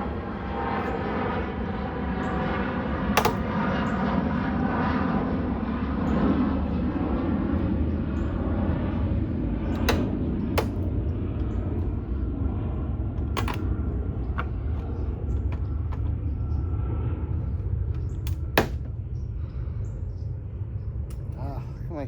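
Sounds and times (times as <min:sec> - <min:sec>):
steady low rumble: 0:00.0 - 0:22.0
plastic parts clicking: 0:13.2 - 0:13.7.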